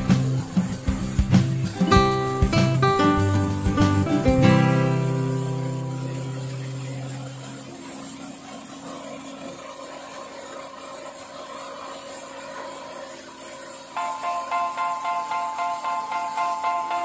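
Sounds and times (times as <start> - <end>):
guitar chord ringing: 0.0 - 7.8, 14.0 - 17.0
faint machine hum: 0.0 - 17.0.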